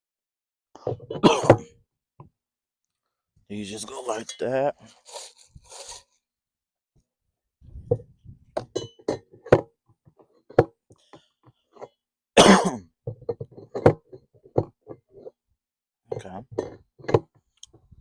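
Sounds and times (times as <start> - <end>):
metal clicks and knocks: 7.9 - 12.0, 13.1 - 15.3, 16.1 - 17.9.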